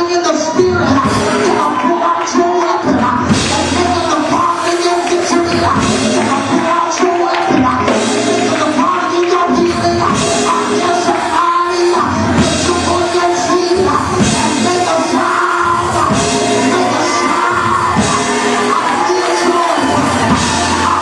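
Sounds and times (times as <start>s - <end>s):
live praise band music: 0.0s - 21.0s
drums: 0.3s - 21.0s
people singing: 0.7s - 21.0s
people yelling: 12.1s - 21.0s.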